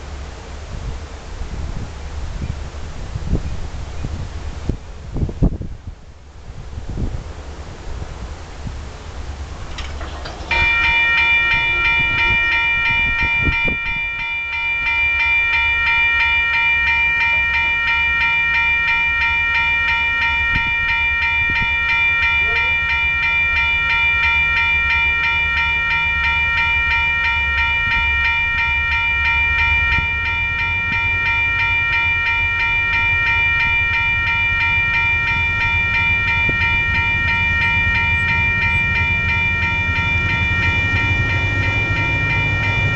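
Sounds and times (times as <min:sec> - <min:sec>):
diesel locomotive rumble: 0:00.0 - 0:42.9
crossing warning bell ringing: 0:09.2 - 0:42.9.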